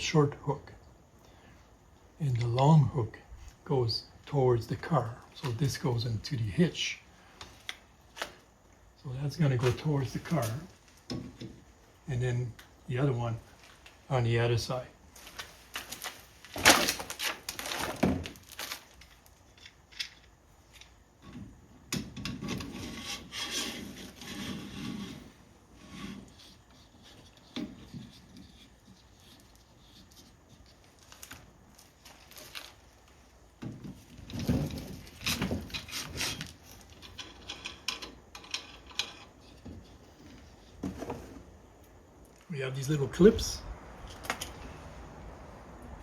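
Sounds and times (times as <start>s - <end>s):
hard parts scraping and clicking: 15.2s - 42.0s.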